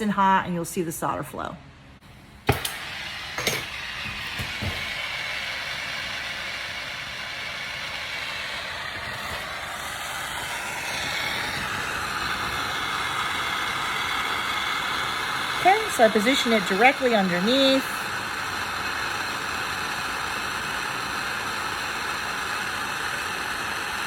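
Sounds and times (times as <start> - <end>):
soldering torch hissing: 2.0 - 24.0.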